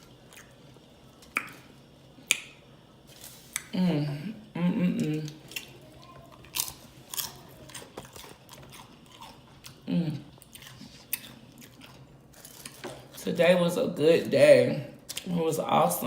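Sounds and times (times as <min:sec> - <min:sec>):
chewing and crunching chips: 0:00.0 - 0:02.5, 0:05.0 - 0:13.2
person humming: 0:09.8 - 0:10.3.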